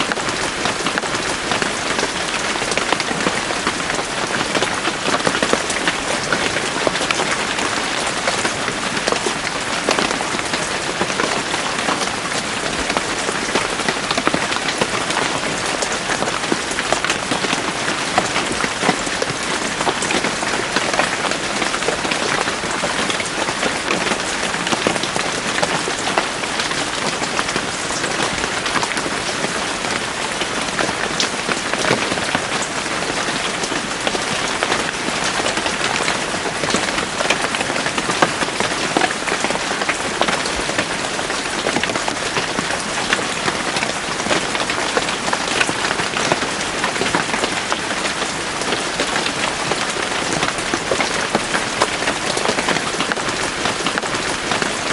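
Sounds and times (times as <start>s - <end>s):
rain falling on leaves: 0.0s - 54.9s.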